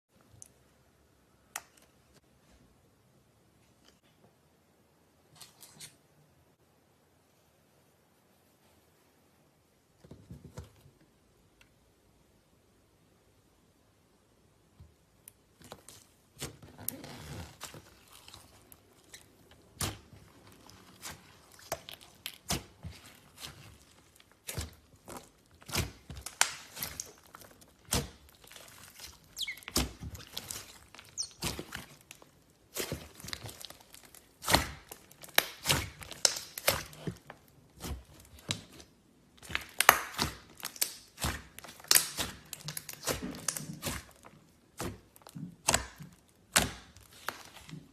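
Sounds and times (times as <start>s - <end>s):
slime crackling: 15.3s - 47.9s
slime clicking and popping: 24.2s - 32.2s, 32.8s - 37.0s, 39.4s - 44.2s.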